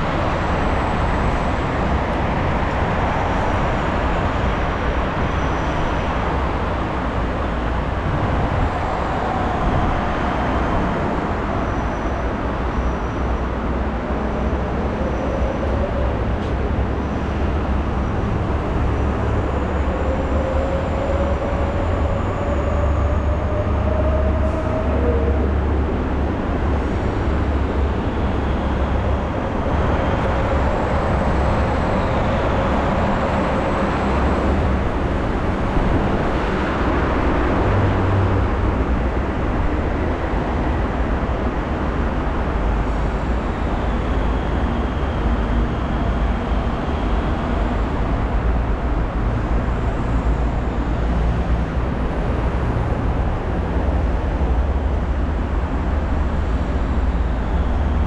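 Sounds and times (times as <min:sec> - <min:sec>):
rumble of passing vehicles: 0:00.0 - 0:58.0.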